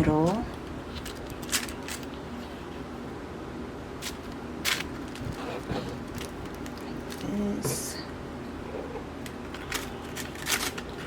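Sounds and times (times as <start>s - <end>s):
dried flowers rustling: 0.0s - 2.8s
faint steady hum: 0.0s - 11.0s.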